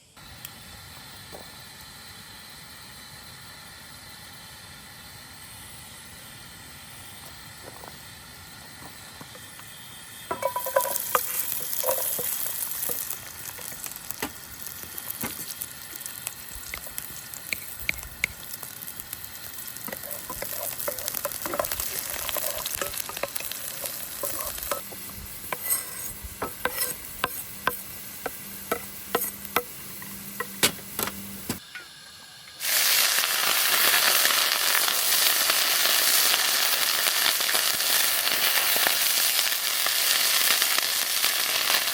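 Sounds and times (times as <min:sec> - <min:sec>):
food sizzling in a pan: 0:00.2 - 0:41.9
utensil clicking and clinking: 0:19.8 - 0:31.2.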